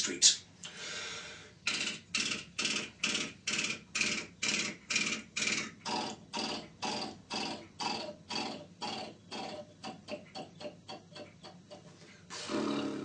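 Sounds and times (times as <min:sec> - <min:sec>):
man imitating hoofbeats with mouth: 0:01.6 - 0:13.0.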